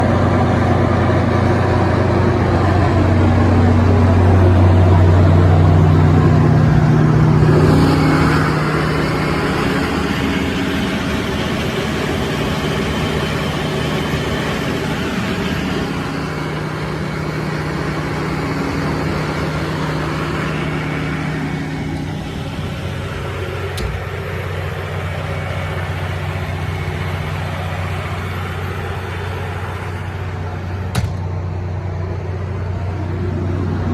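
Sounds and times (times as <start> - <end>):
diesel generator running: 0.0 - 33.9.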